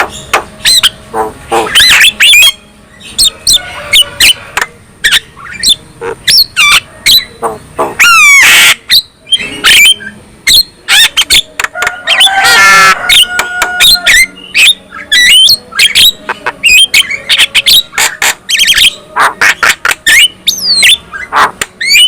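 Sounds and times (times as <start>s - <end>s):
harsh rasping bird call: 3.2s - 22.0s.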